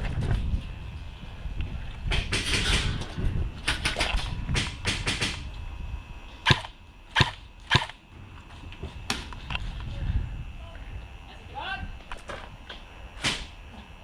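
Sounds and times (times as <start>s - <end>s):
airsoft guns firing: 3.6s - 5.4s, 6.4s - 8.0s.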